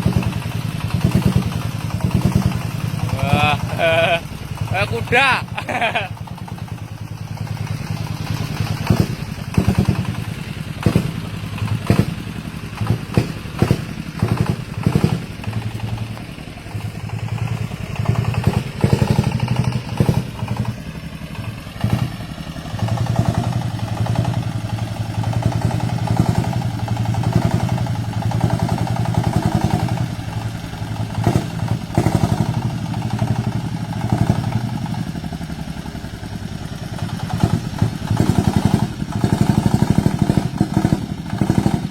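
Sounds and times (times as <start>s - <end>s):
diesel engine running: 0.0s - 41.9s
sharp clattering knocks: 6.3s - 16.3s.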